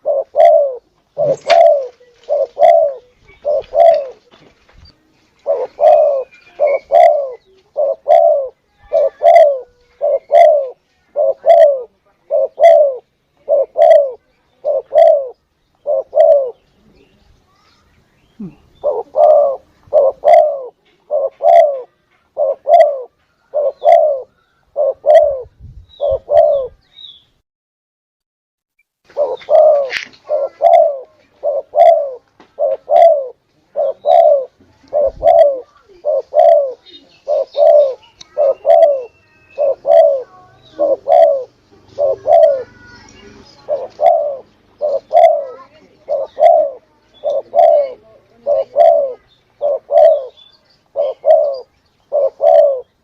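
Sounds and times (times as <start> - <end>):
dove cooing: 0.0 - 4.3, 5.4 - 16.8, 18.4 - 26.8, 29.1 - 53.0.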